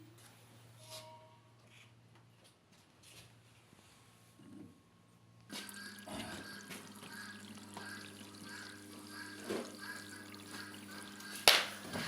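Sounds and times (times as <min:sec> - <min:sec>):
low electrical hum: 0:03.3 - 0:12.0
water hissing through valve: 0:05.5 - 0:12.0.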